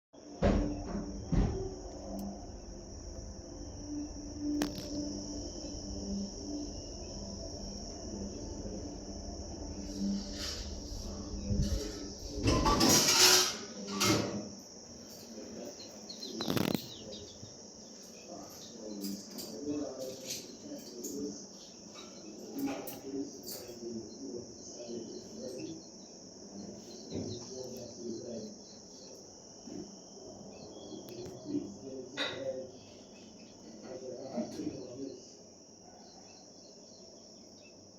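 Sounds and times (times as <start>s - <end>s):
insects shrilling: 0.3s - 37.9s.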